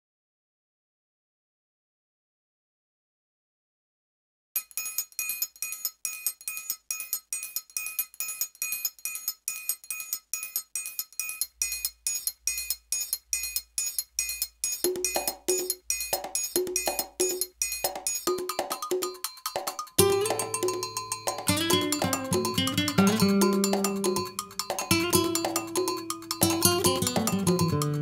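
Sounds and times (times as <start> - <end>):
bell-like percussion ticks: 4.6 - 28.0
keyboard melody: 18.3 - 28.0.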